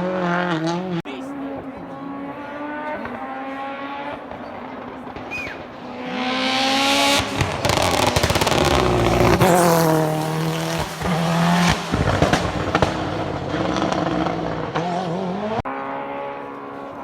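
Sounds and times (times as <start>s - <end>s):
race car engine revving: 0.0s - 17.0s
exhaust cracks: 2.6s - 15.7s.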